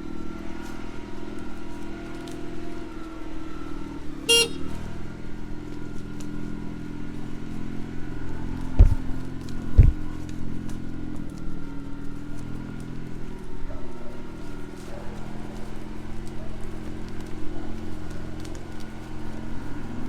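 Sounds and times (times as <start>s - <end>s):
farm vehicle engine running: 0.0s - 20.0s
heavy thumps: 8.8s - 9.1s, 9.7s - 10.1s.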